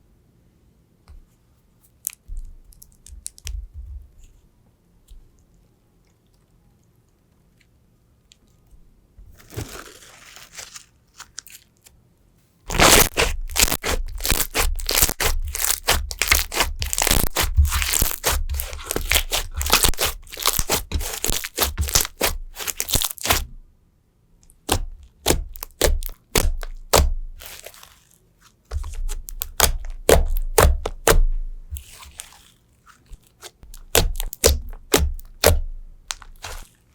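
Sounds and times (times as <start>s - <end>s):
slime crackling: 12.7s - 23.6s, 24.5s - 36.9s
slime squishing: 12.7s - 23.6s, 24.4s - 36.9s.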